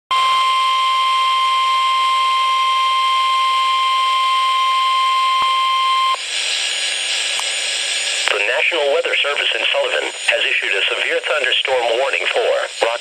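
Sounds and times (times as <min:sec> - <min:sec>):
loud steady alarm tone: 0:00.1 - 0:08.2
radio hiss: 0:05.9 - 0:13.0.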